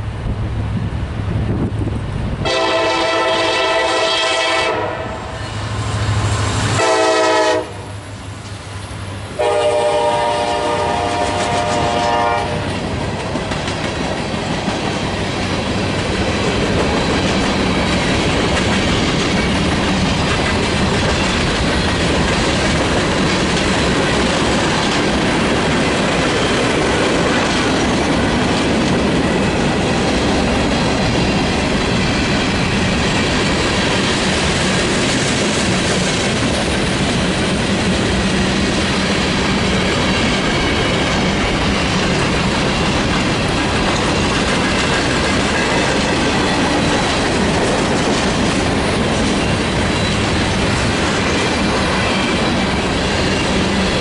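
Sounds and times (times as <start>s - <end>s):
train rumbling past: 0.0s - 54.0s
train horn blasts: 2.4s - 5.5s, 6.8s - 8.0s, 9.4s - 12.7s
wheels clicking over rail joints: 12.6s - 54.0s.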